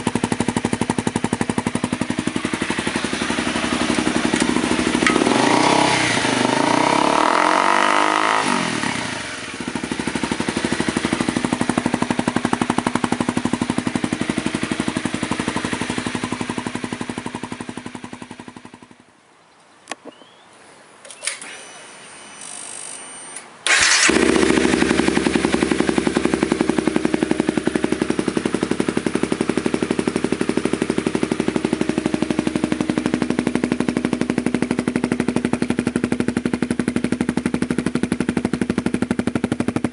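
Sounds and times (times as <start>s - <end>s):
motorcycle engine idling: 0.0s - 19.1s, 23.7s - 39.9s
faint high whine: 20.1s - 23.5s.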